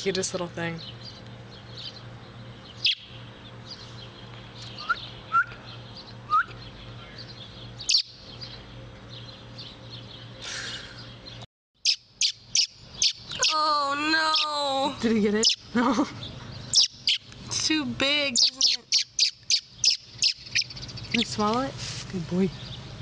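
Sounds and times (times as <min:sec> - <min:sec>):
low electrical hum: 0:00.0 - 0:23.0
baby bird chirping: 0:02.7 - 0:03.8, 0:04.6 - 0:08.6, 0:11.3 - 0:21.6.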